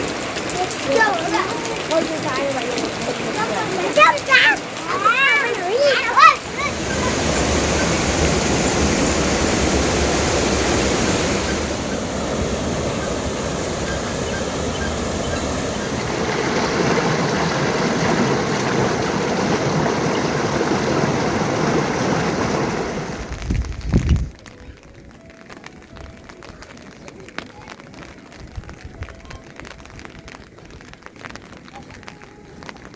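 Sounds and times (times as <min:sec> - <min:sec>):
water rushing: 0:00.0 - 0:23.5.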